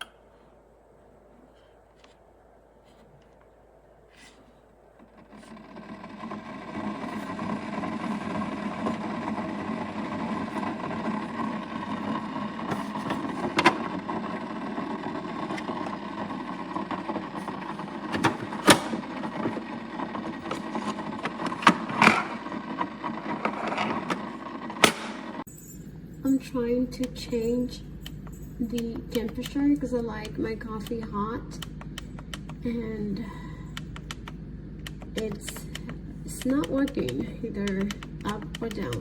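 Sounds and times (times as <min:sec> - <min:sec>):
coffee maker pump running: 0:04.9 - 0:39.0
sharp clicks: 0:31.6 - 0:32.7, 0:33.7 - 0:39.0.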